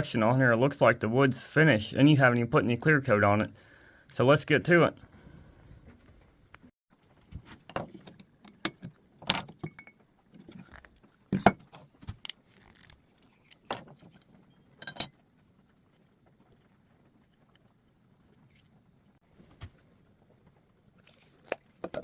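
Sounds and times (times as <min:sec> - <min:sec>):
metal clinks and knocks: 0:07.7 - 0:10.1, 0:13.6 - 0:15.2.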